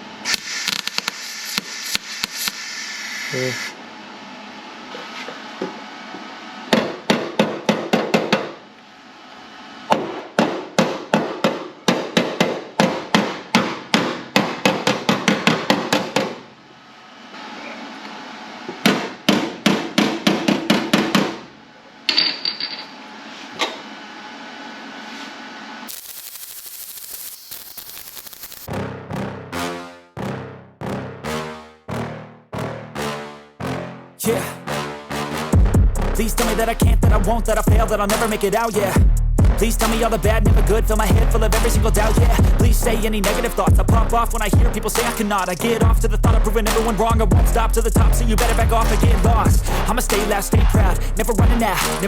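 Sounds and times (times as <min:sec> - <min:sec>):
hammer striking sheet steel: 0:09.9 - 0:16.4.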